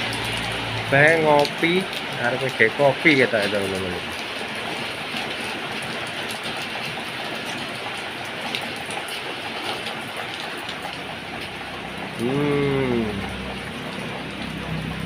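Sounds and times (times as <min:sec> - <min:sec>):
heavy rain falling: 0:00.0 - 0:15.0
raindrops ticking on surfaces: 0:00.0 - 0:15.0.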